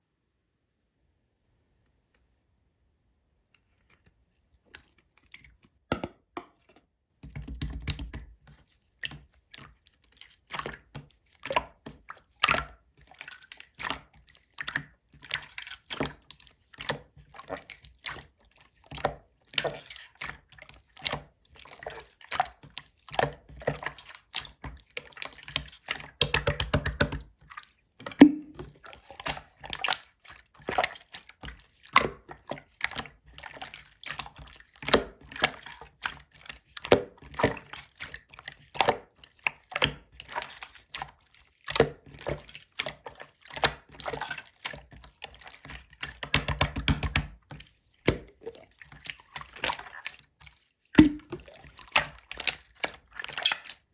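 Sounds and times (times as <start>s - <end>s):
slime squelching and popping: 51.0s - 53.8s.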